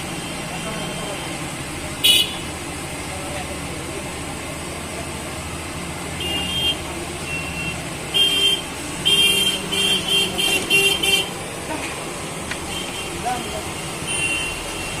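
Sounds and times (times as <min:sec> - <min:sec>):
street traffic rumble: 0:00.0 - 0:15.0
vehicle horns honking: 0:02.0 - 0:02.5, 0:06.2 - 0:11.4, 0:12.6 - 0:15.0.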